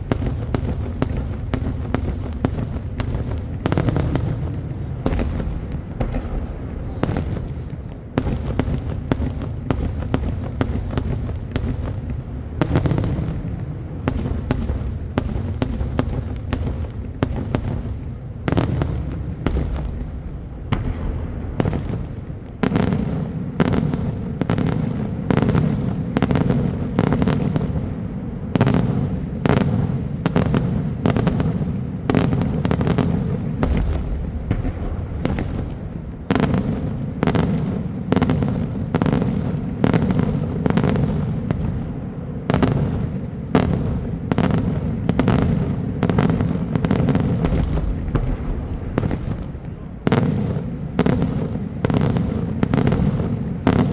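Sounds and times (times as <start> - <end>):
low rumble of echoing reports: 0.0 - 12.6
fireworks bangs: 0.0 - 53.9.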